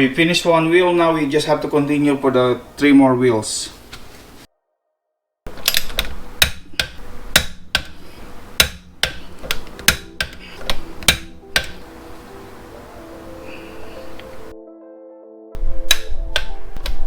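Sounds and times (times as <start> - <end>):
metallic clicks of hand tools: 5.5 - 8.0, 8.6 - 11.8
faint music: 9.1 - 17.0.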